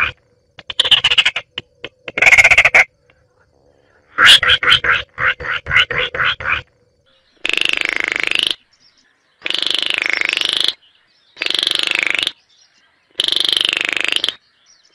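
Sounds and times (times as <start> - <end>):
bird rattling call: 0.0 - 2.9.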